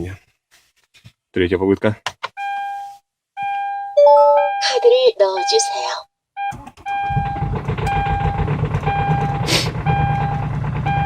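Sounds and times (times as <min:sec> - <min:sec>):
dashboard warning chime: 0:02.4 - 0:11.0
starter cranking engine: 0:06.5 - 0:11.0.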